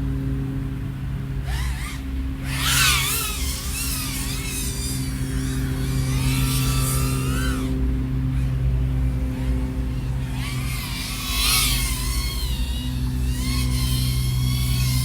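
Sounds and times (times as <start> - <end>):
drone motors whining: 1.0 - 15.0.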